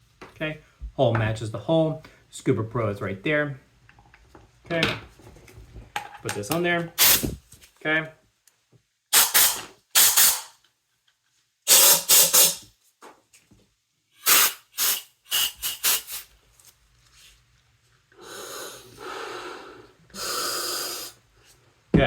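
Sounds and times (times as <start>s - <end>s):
pressurised air hissing: 7.0s - 7.4s, 9.1s - 10.6s, 11.7s - 12.6s, 14.2s - 16.3s, 18.2s - 21.2s.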